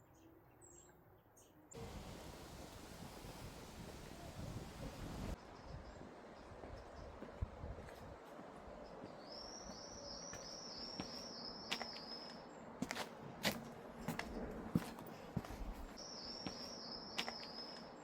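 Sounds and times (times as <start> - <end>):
footsteps: 7.2 - 17.9
small bird chirping: 9.1 - 12.5, 16.0 - 18.0.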